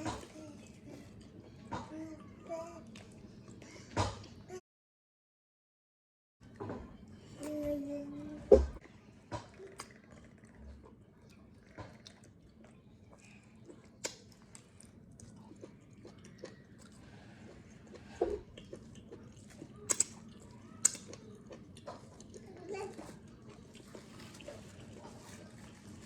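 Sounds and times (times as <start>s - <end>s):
person chewing food: 9.6s - 26.0s
wet mouth clicks and smacks: 14.0s - 14.6s, 19.6s - 21.2s.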